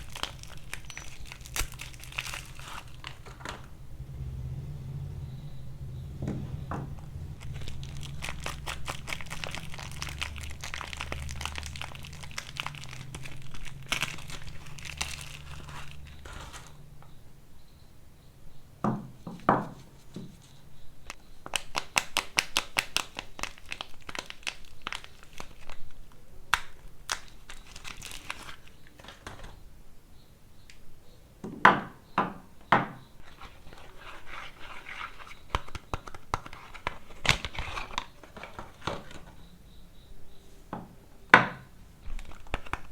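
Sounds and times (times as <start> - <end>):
soap wrapping crinkling and tearing: 0.0 - 3.7, 7.3 - 16.8, 21.0 - 29.5, 33.2 - 39.4, 42.0 - 42.9
louder knocks: 6.2 - 7.1.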